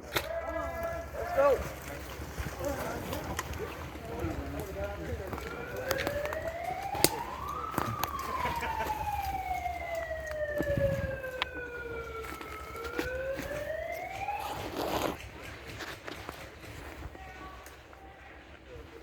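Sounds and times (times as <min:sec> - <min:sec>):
wailing siren: 0:00.4 - 0:15.2.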